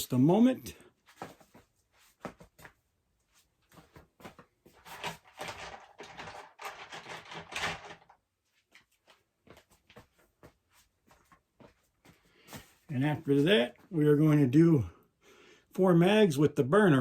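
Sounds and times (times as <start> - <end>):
handling clicks and knocks: 4.2 - 8.2.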